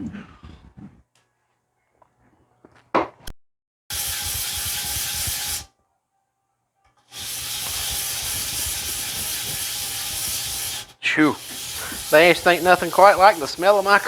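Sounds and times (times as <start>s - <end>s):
pressurized spray hissing: 3.9s - 5.7s, 7.1s - 14.0s.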